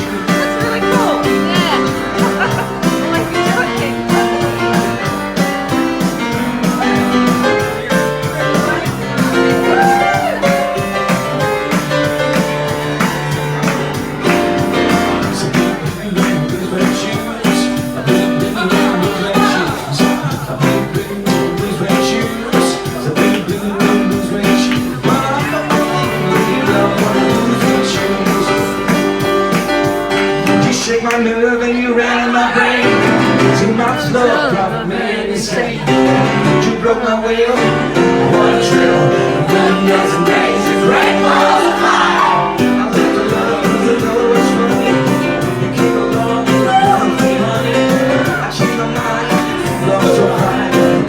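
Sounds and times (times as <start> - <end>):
guitar music over a beat: 0.0 - 31.0, 37.9 - 51.0.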